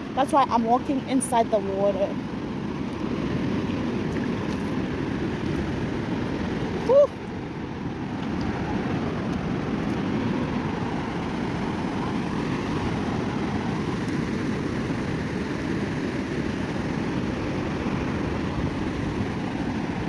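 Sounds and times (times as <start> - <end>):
surf at shoreline: 0.0 - 20.0
wind on microphone: 0.0 - 20.0.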